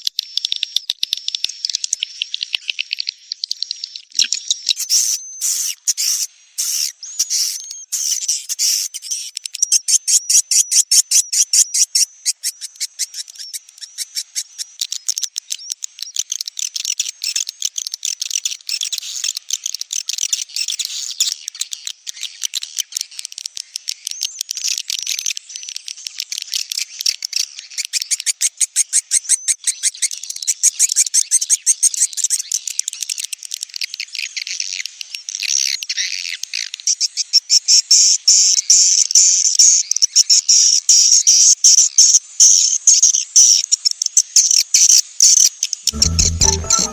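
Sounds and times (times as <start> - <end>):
recorded bird chirps and twittering: 0.0 - 22.4.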